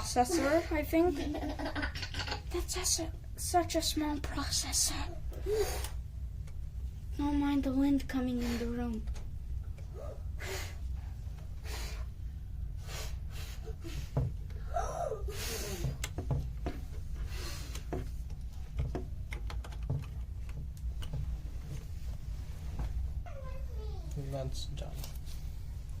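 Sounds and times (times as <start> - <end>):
short breaths: 9.9 - 10.8, 11.6 - 12.2, 12.8 - 16.0.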